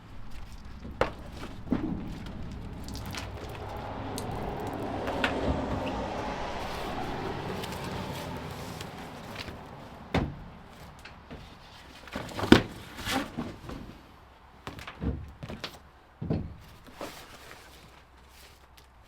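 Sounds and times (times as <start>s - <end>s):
irregular thuds and knocks: 0.0s - 7.1s.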